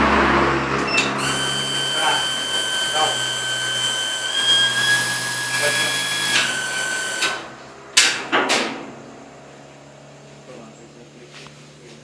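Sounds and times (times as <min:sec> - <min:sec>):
electric pump motor whining: 0:00.0 - 0:08.2.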